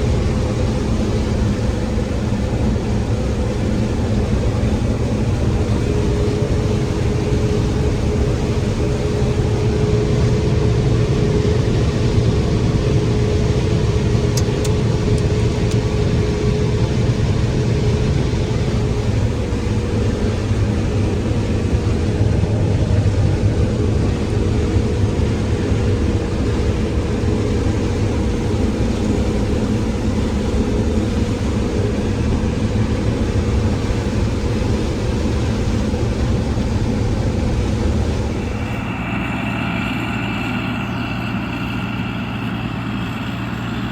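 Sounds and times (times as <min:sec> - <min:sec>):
heavy engine droning: 0:00.0 - 0:43.9
higher steady tone: 0:37.4 - 0:43.9.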